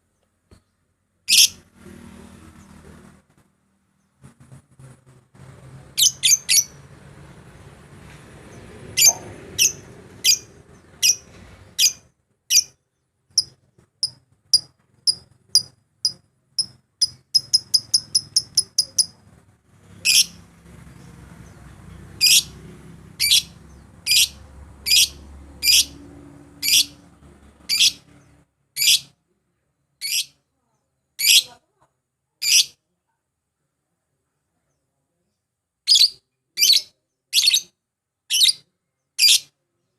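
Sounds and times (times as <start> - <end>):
lovebird chirping: 1.3 - 1.6, 6.0 - 6.8, 9.0 - 19.3, 23.2 - 26.0.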